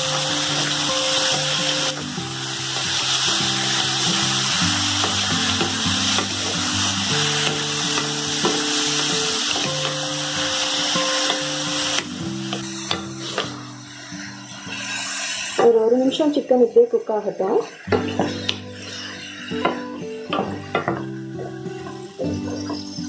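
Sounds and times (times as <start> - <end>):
chicken sizzling in oil: 0.0 - 16.3
background music: 0.0 - 23.0.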